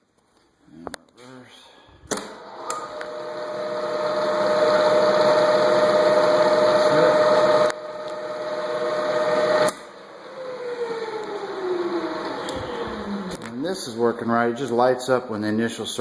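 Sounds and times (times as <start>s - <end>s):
milling machine motor whine: 2.4s - 13.5s.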